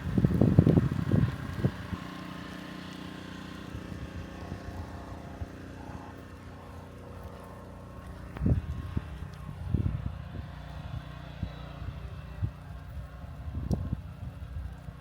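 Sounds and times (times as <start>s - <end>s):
wind buffeting microphone: 0.0s - 2.3s, 8.2s - 15.0s
low mechanical hum: 0.0s - 15.0s.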